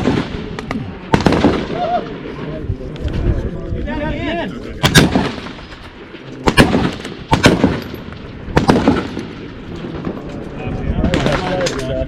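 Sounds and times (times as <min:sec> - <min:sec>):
rifle gunshots: 0:00.0 - 0:01.8, 0:04.8 - 0:10.1.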